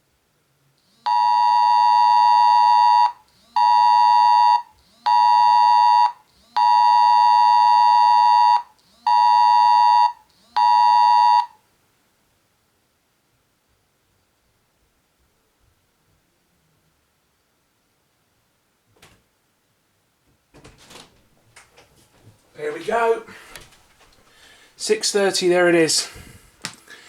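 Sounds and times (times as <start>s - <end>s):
phone emergency alert beeps: 1.0s - 11.6s.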